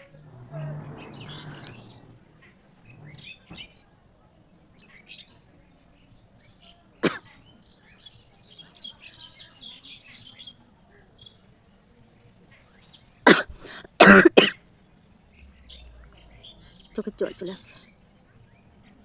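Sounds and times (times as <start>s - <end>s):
birds chirping faintly: 0.0s - 19.0s
person sneezing: 7.0s - 7.2s, 13.3s - 14.5s.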